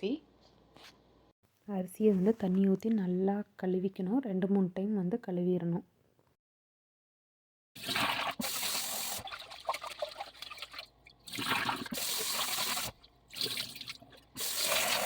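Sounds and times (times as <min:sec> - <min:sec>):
water splashing and trickling: 0:09.2 - 0:12.0.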